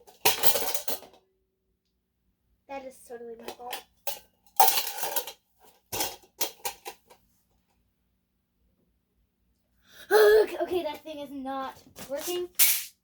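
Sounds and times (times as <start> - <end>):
plastic toys clattering: 0.0 - 1.2, 3.4 - 7.2, 12.0 - 12.9.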